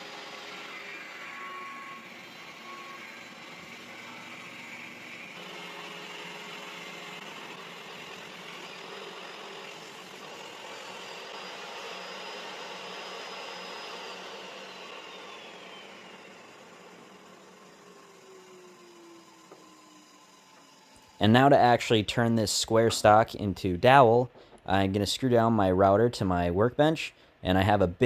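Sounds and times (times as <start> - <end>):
table saw ripping wood: 0.0 - 21.1.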